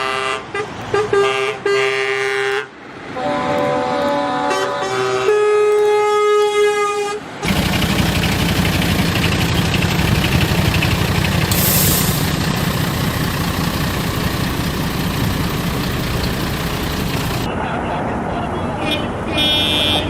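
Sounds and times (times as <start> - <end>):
truck horn: 0.0 - 17.5, 18.8 - 20.0
truck engine rumbling: 7.4 - 17.5.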